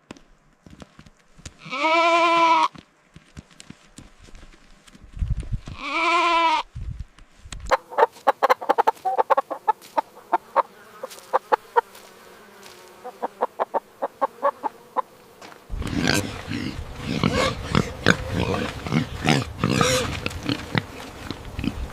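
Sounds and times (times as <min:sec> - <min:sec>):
chicken clucking: 0:07.7 - 0:12.0, 0:13.0 - 0:15.1.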